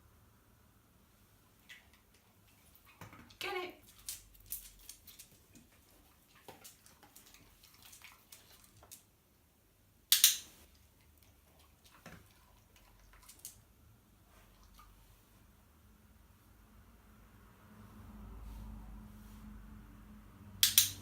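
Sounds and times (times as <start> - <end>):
sharp loud click: 10.1 - 10.5, 20.6 - 21.0
soft rustles: 17.8 - 19.9.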